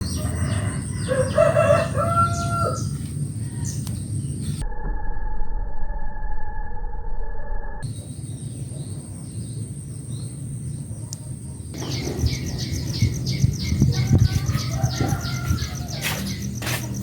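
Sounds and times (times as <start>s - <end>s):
small birds chirping: 7.9s - 17.0s.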